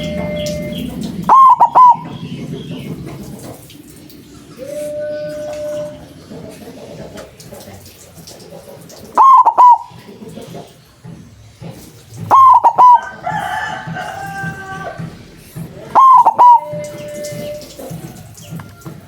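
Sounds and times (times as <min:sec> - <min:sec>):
dove cooing: 0:00.0 - 0:10.7, 0:12.2 - 0:18.5.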